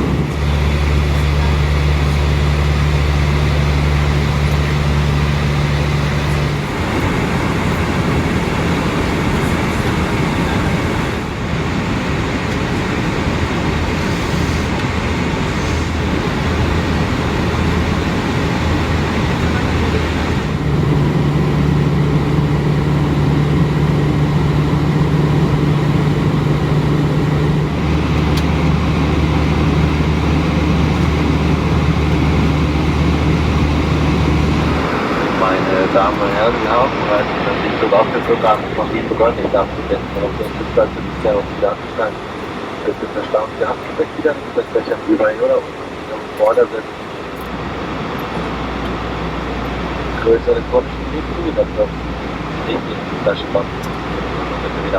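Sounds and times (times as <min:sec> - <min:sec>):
rush of airflow: 0:00.0 - 0:36.2
jet engines droning: 0:00.0 - 0:54.9.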